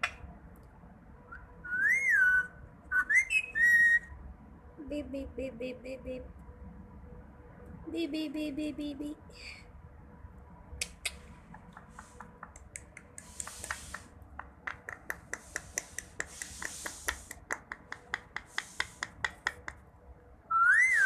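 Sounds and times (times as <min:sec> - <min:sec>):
parrot whistling: 0:01.3 - 0:04.1, 0:20.5 - 0:21.0
soft rubbing noises: 0:11.6 - 0:12.5, 0:13.1 - 0:14.2, 0:15.2 - 0:19.6.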